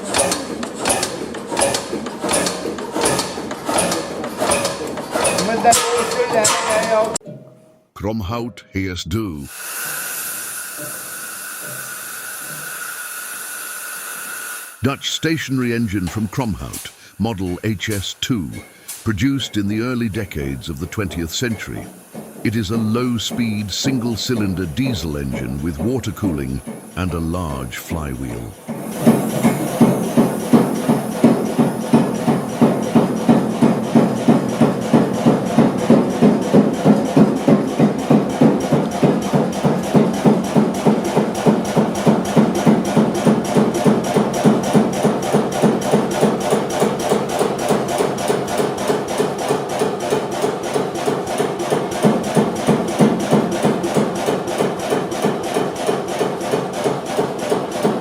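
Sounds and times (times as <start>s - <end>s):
diesel engine knocking steadily: 0.0s - 5.8s, 28.9s - 58.0s.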